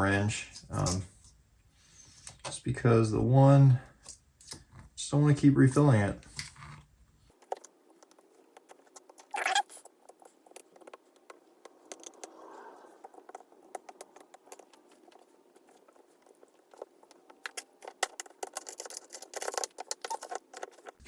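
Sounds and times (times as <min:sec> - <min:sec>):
hand tools clicking and tapping: 0:07.3 - 0:21.0.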